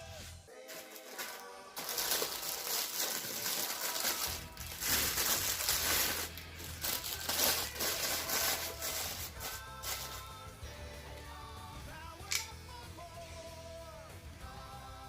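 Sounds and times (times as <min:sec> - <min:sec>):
background music: 0:00.0 - 0:15.0
plastic packaging crinkling: 0:00.7 - 0:10.3.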